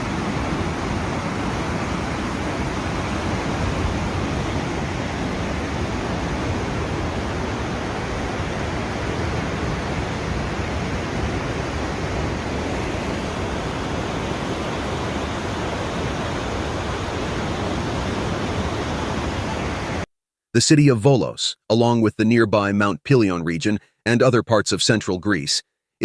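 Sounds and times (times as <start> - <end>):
floodwater rushing: 0.0 - 20.0.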